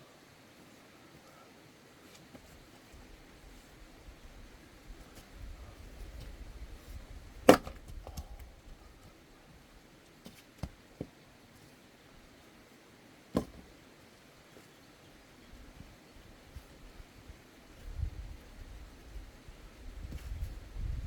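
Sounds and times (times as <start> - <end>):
axe striking firewood: 7.4 - 8.3, 13.3 - 13.7.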